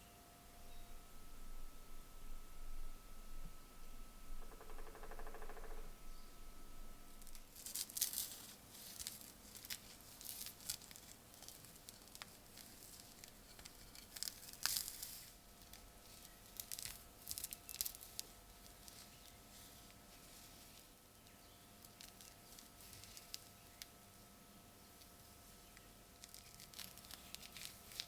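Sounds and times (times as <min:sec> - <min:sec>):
faint steady hum: 0:00.0 - 0:28.0
scraping and crinkling handling: 0:07.2 - 0:28.0.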